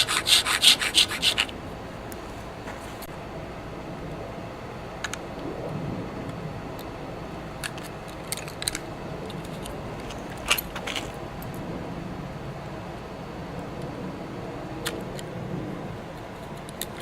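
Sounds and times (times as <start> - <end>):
low background hum: 0.0 - 17.0
small tools clicking and clinking: 7.6 - 11.2.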